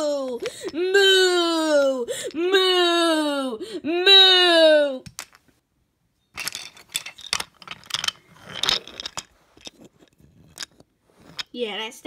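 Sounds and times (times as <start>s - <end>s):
wooden toy trains clattering: 6.3s - 12.0s.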